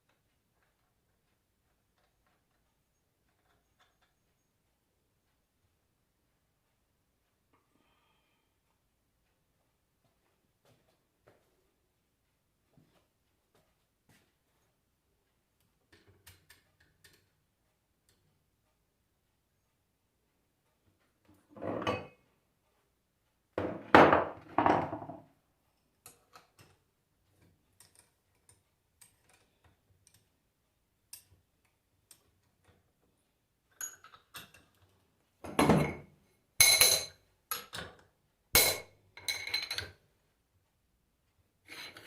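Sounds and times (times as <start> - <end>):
metal tools knocking and clinking: 33.7 - 34.8, 35.4 - 38.0, 38.6 - 40.0.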